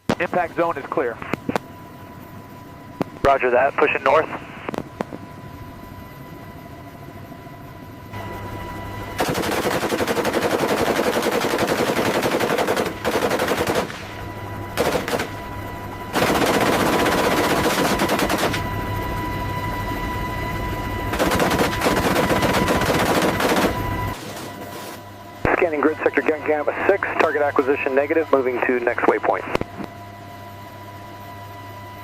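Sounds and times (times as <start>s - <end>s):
rotary gun rapid fire: 9.2s - 14.2s, 14.8s - 15.4s, 16.1s - 18.6s, 21.1s - 24.5s.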